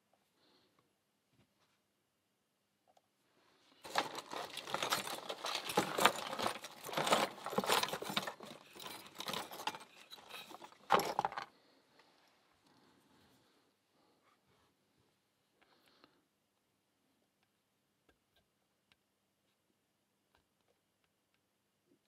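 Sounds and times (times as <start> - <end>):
small metal pieces jangling: 3.9 - 11.4.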